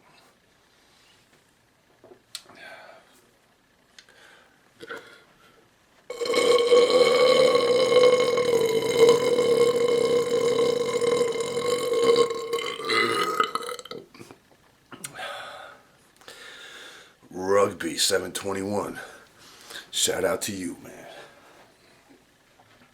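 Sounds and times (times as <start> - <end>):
man belching: 6.1 - 14.1.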